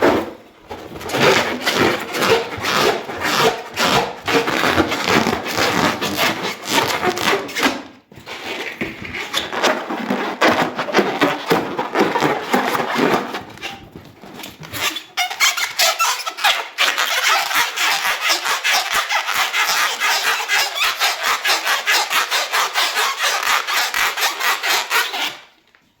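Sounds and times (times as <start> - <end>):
hands rubbing squeaky balloon: 0.9 - 25.6.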